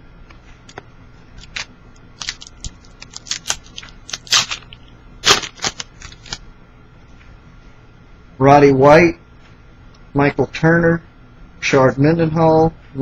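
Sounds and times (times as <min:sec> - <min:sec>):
cards and foil pack rustling: 0:01.4 - 0:06.4.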